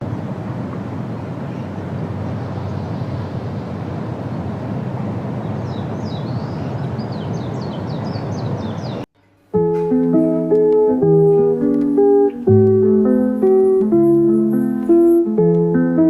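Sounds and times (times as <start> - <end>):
small bird chirping: 5.5 - 9.1.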